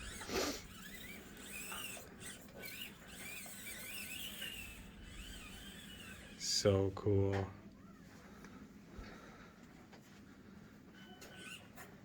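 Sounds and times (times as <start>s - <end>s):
small electric motor whining: 0.0s - 6.6s, 11.0s - 11.9s.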